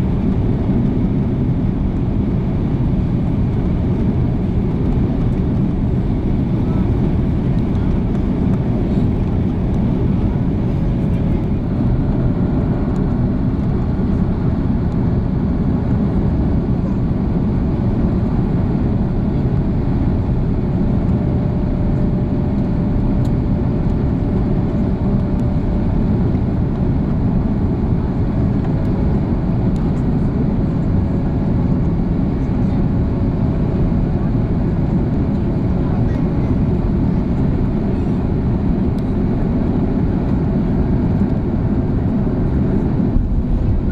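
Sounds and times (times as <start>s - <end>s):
airliner cabin engine rumble: 0.0s - 43.9s.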